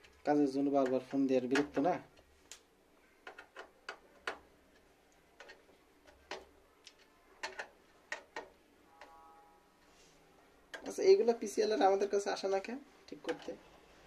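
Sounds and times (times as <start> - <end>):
light clicks and taps of small parts: 0.0 - 9.1.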